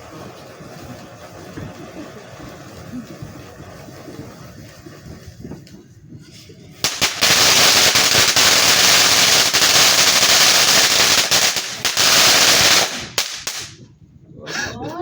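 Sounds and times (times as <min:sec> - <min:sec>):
firework crackling pops: 0:00.0 - 0:05.8, 0:06.8 - 0:13.9.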